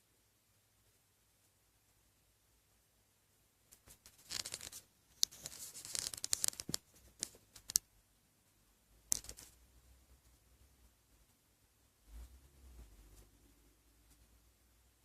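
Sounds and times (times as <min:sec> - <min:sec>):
scratching with clicks and crackles: 0:03.7 - 0:07.9, 0:09.1 - 0:10.4.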